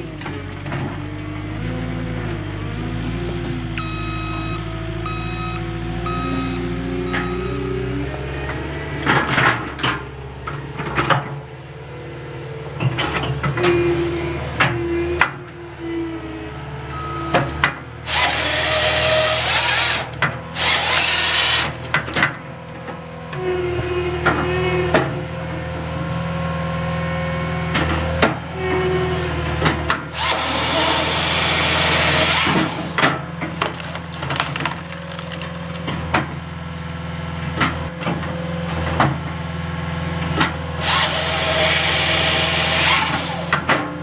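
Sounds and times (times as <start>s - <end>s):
skid steer engine running: 0.0s - 44.0s
wood cracks and knocks: 33.0s - 36.3s.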